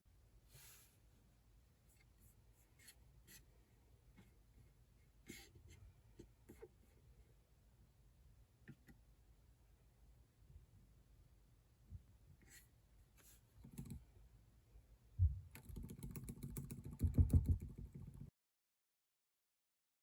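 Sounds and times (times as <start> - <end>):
typing on laptop keyboard: 13.6 - 14.0, 15.5 - 18.3.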